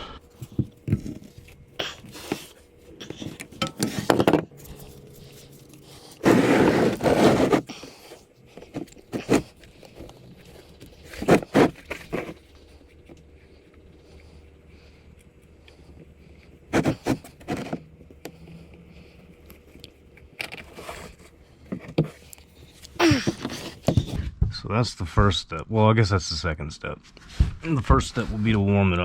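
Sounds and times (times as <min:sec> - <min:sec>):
loud rush of scraping: 0:06.2 - 0:07.7.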